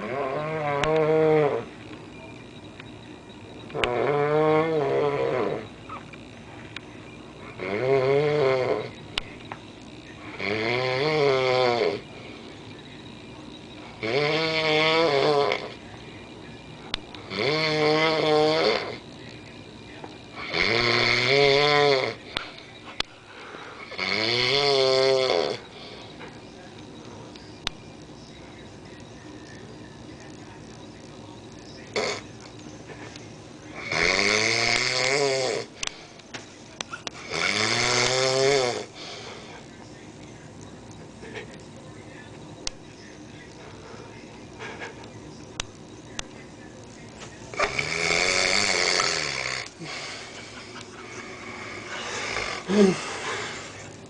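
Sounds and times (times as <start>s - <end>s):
man snoring loudly: 0.0s - 1.7s, 3.7s - 5.6s, 7.6s - 8.9s, 10.3s - 12.0s, 14.0s - 15.8s, 17.3s - 19.0s, 20.4s - 22.2s, 23.8s - 25.6s, 33.8s - 35.7s, 37.2s - 39.0s, 47.6s - 50.1s, 51.6s - 53.2s
quiet breathing: 22.2s - 24.0s, 25.5s - 27.6s, 38.8s - 40.0s, 43.6s - 45.2s, 48.9s - 54.0s.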